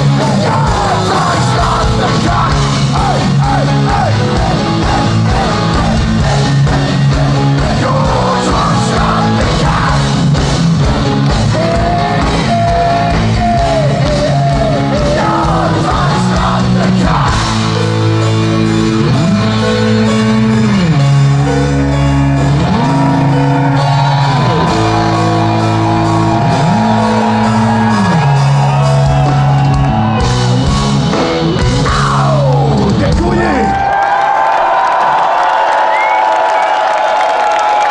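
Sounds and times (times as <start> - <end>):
person singing: 0.0 - 10.4, 11.4 - 18.2
distorted guitars: 0.0 - 33.9
drums: 0.0 - 37.9.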